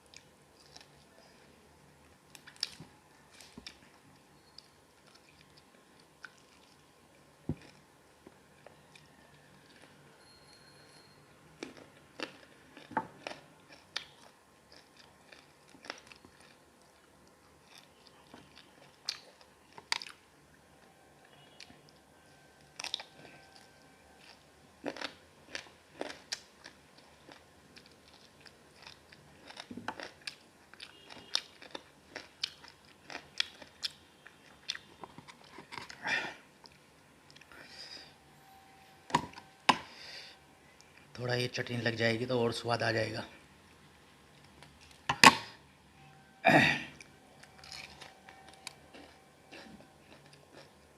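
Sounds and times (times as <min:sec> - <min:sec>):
person chewing and biting: 0:11.6 - 0:20.2, 0:22.8 - 0:36.0, 0:47.4 - 0:50.9.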